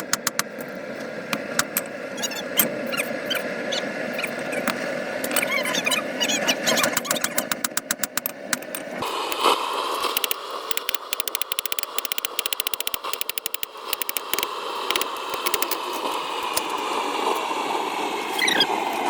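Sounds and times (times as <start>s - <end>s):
rapid ticking: 0.0s - 0.5s, 6.8s - 9.4s, 10.1s - 15.8s
sharp metallic clicks: 0.0s - 0.7s, 1.3s - 1.9s, 6.8s - 16.8s
forge burner hissing: 0.0s - 19.0s.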